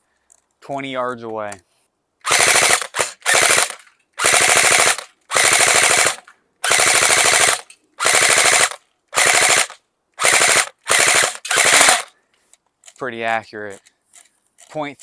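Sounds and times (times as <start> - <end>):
airsoft rifle automatic fire: 2.2 - 12.1.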